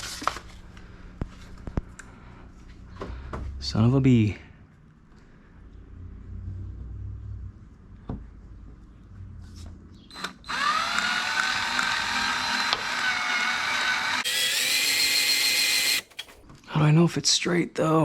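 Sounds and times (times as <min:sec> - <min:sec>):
cordless drill motor whining: 0:10.1 - 0:16.4.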